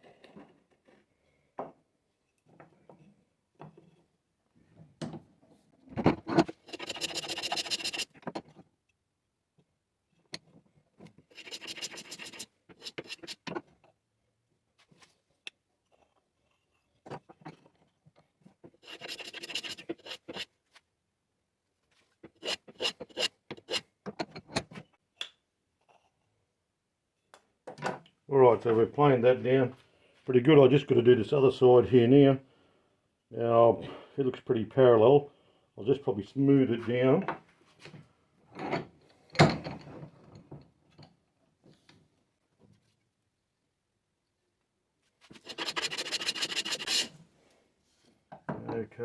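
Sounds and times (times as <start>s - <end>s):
hand plane strokes on wood: 6.5s - 8.2s, 11.4s - 13.5s, 18.8s - 20.5s, 22.3s - 23.8s, 45.3s - 47.2s.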